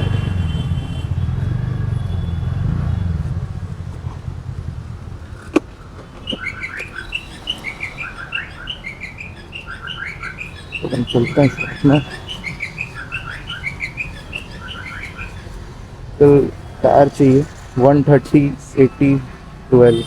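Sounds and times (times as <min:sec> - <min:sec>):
small bird chirping: 0:06.2 - 0:15.7.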